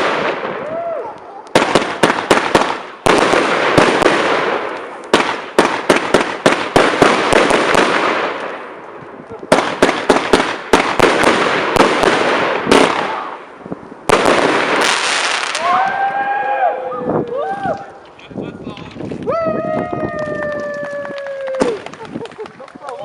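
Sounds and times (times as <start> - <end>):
fireworks bangs: 0.0 - 16.4
fireworks crackling: 0.0 - 16.5, 17.2 - 23.0.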